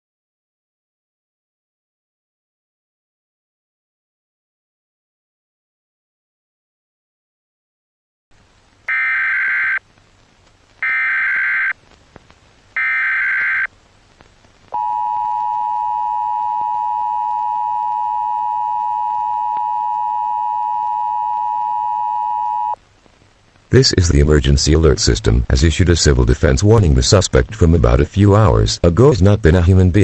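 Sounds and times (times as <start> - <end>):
buzzy data bursts: 8.9 - 9.8, 10.8 - 11.7, 12.8 - 13.7
two-tone alert signal: 8.9 - 9.8, 10.8 - 11.7, 12.8 - 13.7.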